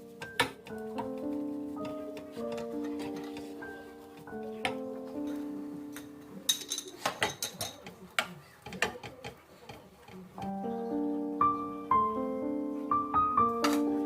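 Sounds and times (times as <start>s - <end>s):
piano music: 0.0s - 7.2s, 10.4s - 14.0s.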